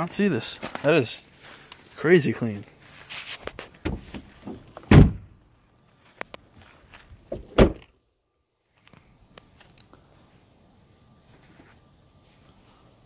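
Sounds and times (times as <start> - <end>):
car door shutting: 3.8 - 5.3.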